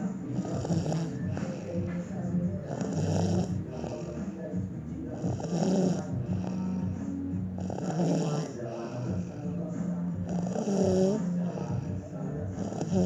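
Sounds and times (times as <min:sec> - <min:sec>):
low steady drone: 0:00.0 - 0:10.4
person snoring: 0:00.0 - 0:13.0.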